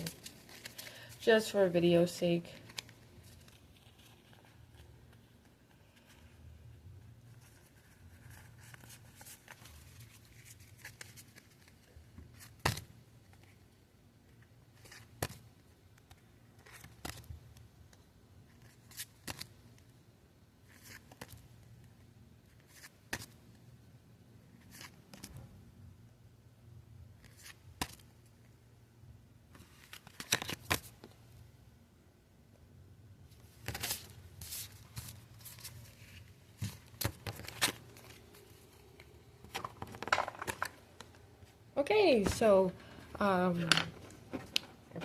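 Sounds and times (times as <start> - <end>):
trading cards being flipped: 29.6 - 31.0, 33.6 - 41.5.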